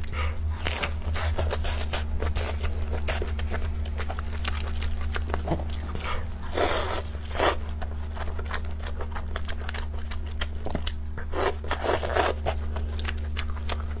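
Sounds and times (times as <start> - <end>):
chewing and crunching: 0.0 - 14.0
steady low hum: 0.0 - 14.0.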